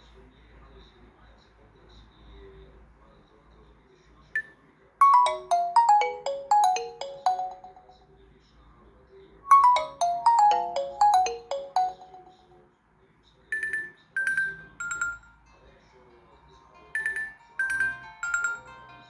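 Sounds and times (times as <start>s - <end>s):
phone ringtone melody: 5.0s - 8.0s, 9.5s - 12.6s, 13.6s - 15.3s, 17.0s - 18.7s.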